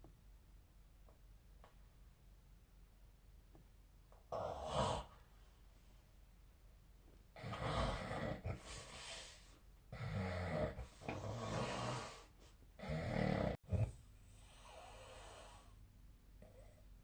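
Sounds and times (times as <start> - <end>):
person snoring: 4.3 - 5.2, 7.4 - 9.2, 9.9 - 13.9.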